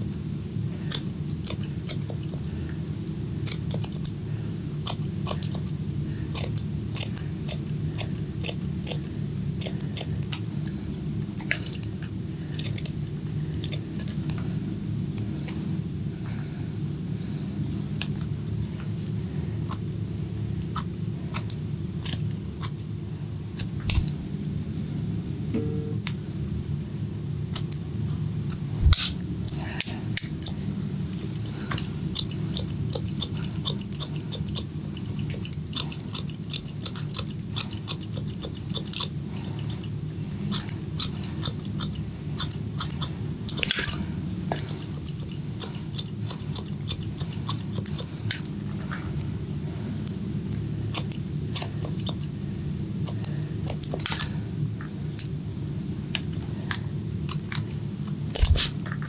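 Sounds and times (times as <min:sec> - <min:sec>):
scissors snipping hair: 0:00.9 - 0:02.5, 0:03.4 - 0:04.2, 0:04.8 - 0:11.9, 0:12.5 - 0:14.3, 0:20.7 - 0:22.9, 0:23.6 - 0:24.2, 0:27.5 - 0:27.8, 0:28.5 - 0:39.9, 0:40.5 - 0:48.5, 0:50.9 - 0:52.3, 0:53.0 - 0:54.4, 0:58.0 - 0:58.8
low hum: 0:09.1 - 0:32.2.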